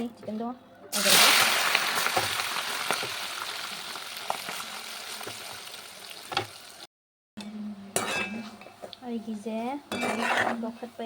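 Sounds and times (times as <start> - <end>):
chicken sizzling in hot oil: 0.9 - 6.9.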